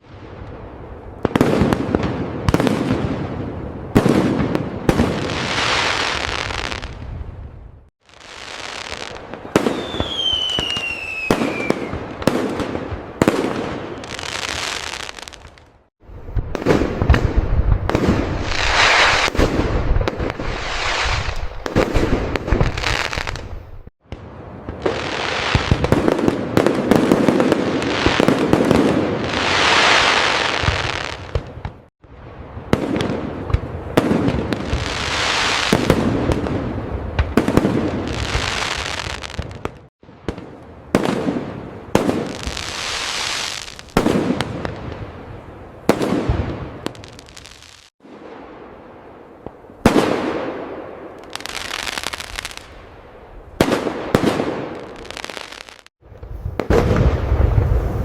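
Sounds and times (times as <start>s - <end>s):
fireworks booms and bangs: 0.0s - 52.8s, 53.6s - 58.0s
crackling firework bursts: 0.0s - 58.0s
falling firework whistle: 8.5s - 12.1s.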